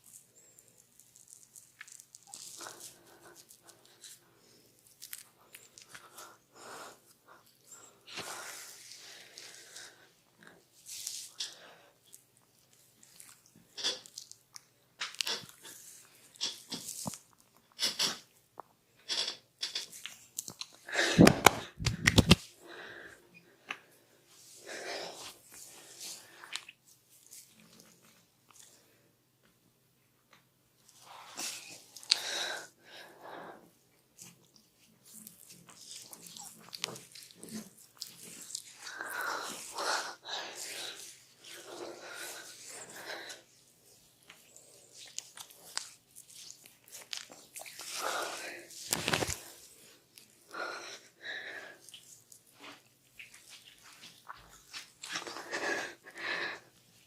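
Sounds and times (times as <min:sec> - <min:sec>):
small wet clicks and snaps: 0:00.0 - 0:04.2, 0:04.8 - 0:06.2, 0:11.0 - 0:17.8, 0:19.6 - 0:20.8, 0:26.4 - 0:28.8, 0:34.2 - 0:39.7, 0:44.2 - 0:48.0, 0:51.8 - 0:55.4
hands rubbing skin and hair: 0:01.2 - 0:04.2, 0:10.8 - 0:11.4, 0:19.9 - 0:22.5, 0:45.0 - 0:50.3, 0:51.8 - 0:55.6
hands rubbing oiled hair: 0:21.0 - 0:22.5.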